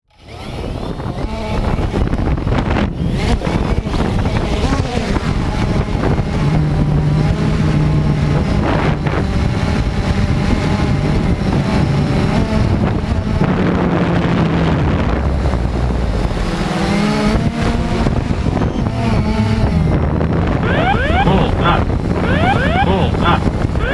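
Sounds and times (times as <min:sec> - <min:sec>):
wind buffeting microphone: 0:00.5 - 0:20.7.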